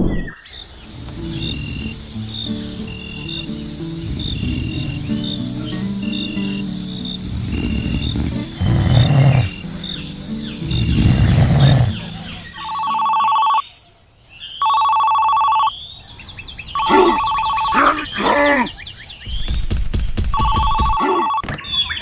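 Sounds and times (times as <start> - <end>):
chirpy gliding voice-like sounds: 0.0 - 14.8, 16.1 - 19.2, 20.8 - 22.0
telephone two-tone ring: 12.6 - 13.6, 14.6 - 15.7, 16.8 - 17.8, 20.4 - 21.4.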